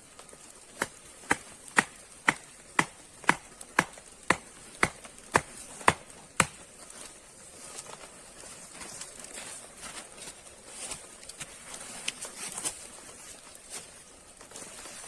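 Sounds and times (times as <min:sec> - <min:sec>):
axe chopping wood: 0:00.8 - 0:06.7.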